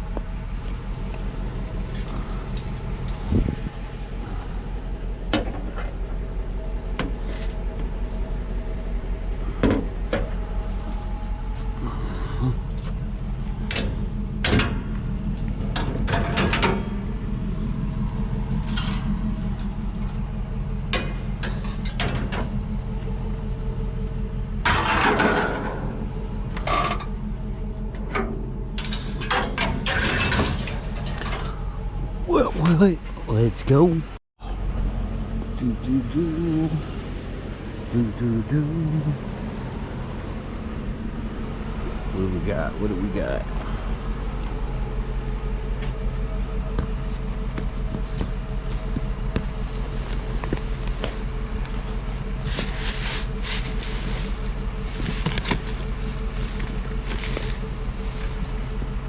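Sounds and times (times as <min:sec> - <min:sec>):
steady low hum: 0:00.0 - 0:59.0
scraping or rustling: 0:29.6 - 0:31.6, 0:46.8 - 0:59.0
clatter of scrap items handled: 0:52.2 - 0:58.8.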